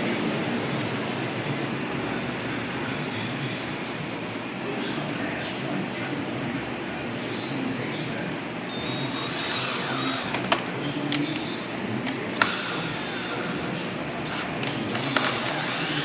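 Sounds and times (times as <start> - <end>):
steady background noise: 0.0 - 16.0.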